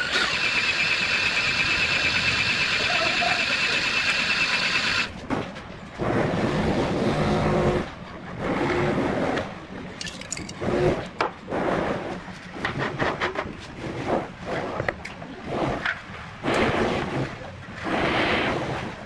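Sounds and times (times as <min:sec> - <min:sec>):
power tool motor bursts: 0:00.0 - 0:05.1.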